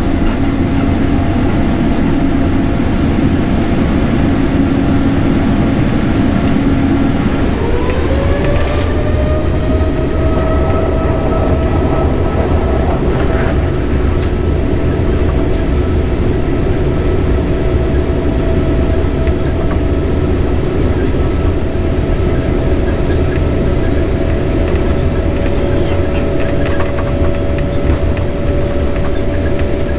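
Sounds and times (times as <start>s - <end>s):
jet engines rumbling with whine: 0.0s - 29.9s.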